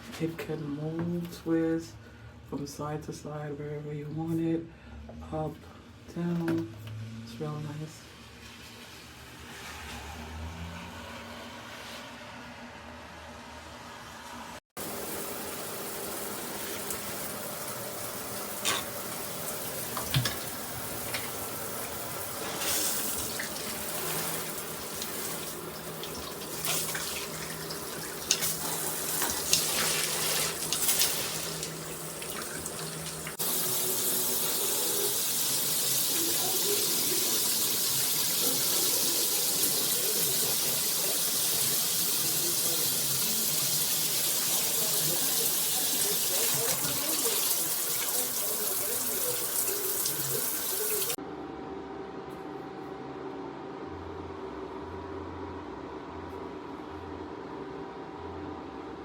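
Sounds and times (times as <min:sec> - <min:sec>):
water spraying from shower head: 0:14.9 - 0:51.2.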